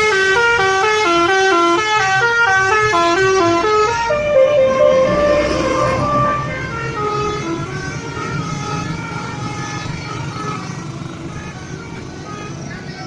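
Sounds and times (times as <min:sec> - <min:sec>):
bus horn playing a melody: 0:00.0 - 0:10.0
bus engine running: 0:00.0 - 0:13.0.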